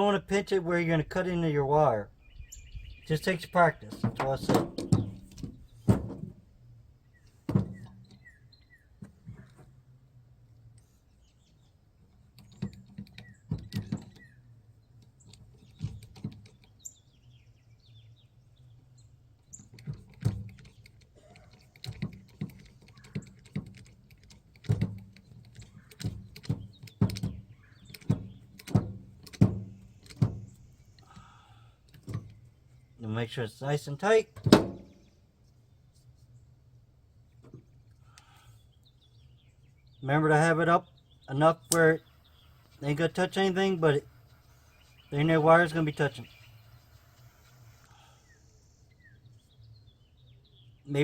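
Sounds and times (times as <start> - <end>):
sharp clicks and knocks: 3.8 - 6.4, 12.1 - 14.3, 15.0 - 16.8, 19.4 - 31.2, 34.3 - 35.2.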